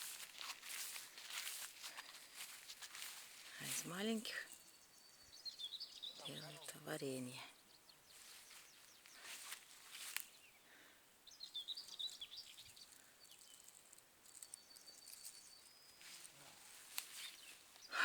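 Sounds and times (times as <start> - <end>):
high bird chirps: 4.5 - 6.7, 11.2 - 16.3.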